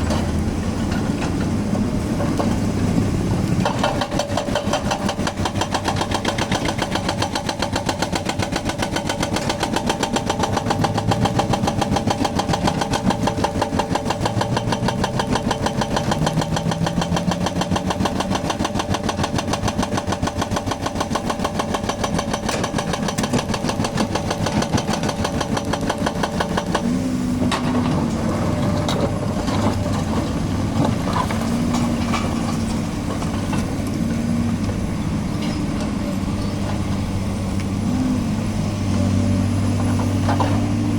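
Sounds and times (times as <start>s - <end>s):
diesel engine running: 0.0s - 40.9s
scattered knocks: 3.6s - 26.9s
hydraulic breaker pounding concrete: 3.6s - 36.0s.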